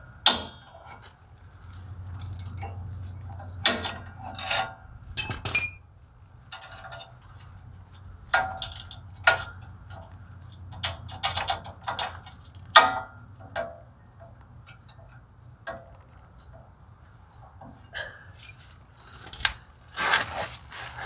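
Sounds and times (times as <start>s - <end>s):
metal parts clinking together: 3.7s - 5.8s, 8.4s - 9.4s.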